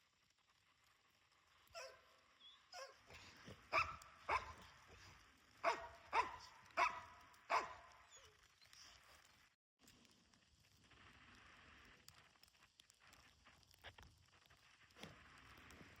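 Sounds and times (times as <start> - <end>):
dog barking: 1.8 - 2.1, 2.7 - 8.3.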